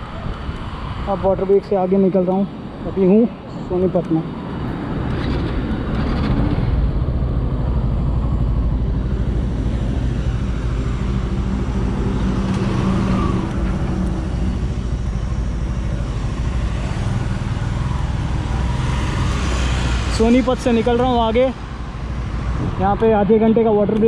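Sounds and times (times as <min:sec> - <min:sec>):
road rumble: 0:00.0 - 0:24.0
traffic noise: 0:00.0 - 0:24.0
motorcycle running: 0:05.0 - 0:24.0.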